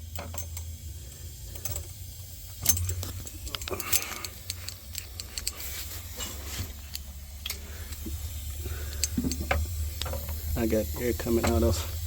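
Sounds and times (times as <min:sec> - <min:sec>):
steady low hum: 0:00.0 - 0:12.0
light clicks and taps of tools: 0:01.5 - 0:02.0, 0:02.6 - 0:08.2, 0:08.8 - 0:10.4.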